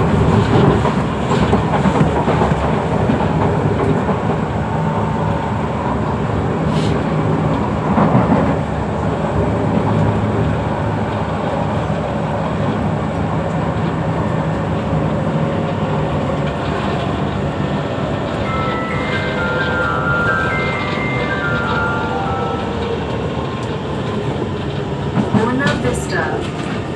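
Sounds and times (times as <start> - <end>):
train rattle: 0.0 - 26.9
wheels rumbling on rails: 0.0 - 26.9.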